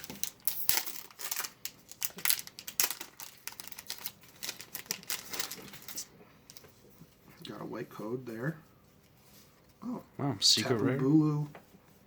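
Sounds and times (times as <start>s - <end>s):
foil wrapper crinkling and tearing: 0.0s - 6.6s.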